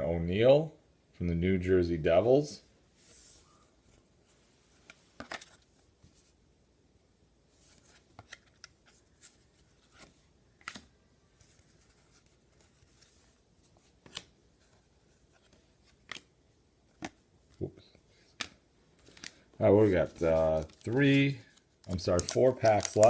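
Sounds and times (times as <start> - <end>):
cards rustling and clicking: 4.7 - 6.4, 7.6 - 23.0.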